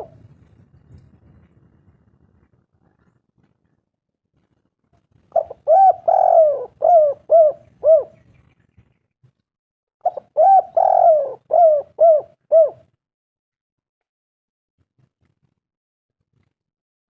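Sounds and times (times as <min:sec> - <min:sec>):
dove cooing: 0:00.0 - 0:00.2, 0:05.3 - 0:08.3, 0:10.0 - 0:12.9.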